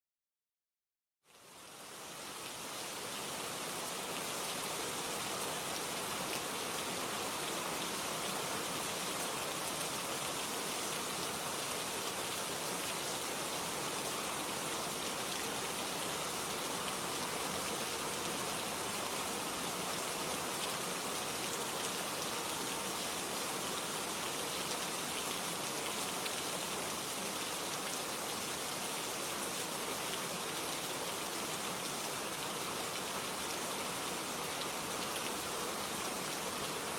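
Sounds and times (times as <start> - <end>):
steady rainfall: 1.3 - 36.9.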